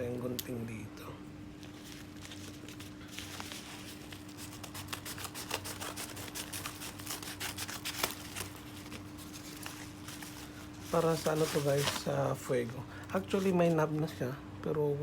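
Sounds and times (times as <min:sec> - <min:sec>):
steady low hum: 0:00.0 - 0:15.0
plastic rustling: 0:01.4 - 0:14.2
scissors snipping plastic: 0:02.2 - 0:12.2.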